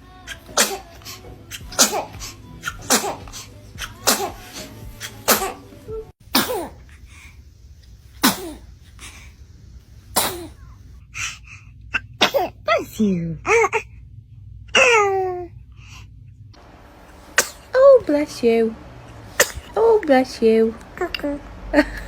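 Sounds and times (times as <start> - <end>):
babies sneezing: 0.3 - 5.7, 6.3 - 6.9, 8.2 - 8.7, 10.1 - 11.4, 12.0 - 12.8, 14.8 - 15.4, 17.1 - 17.8, 19.0 - 19.8.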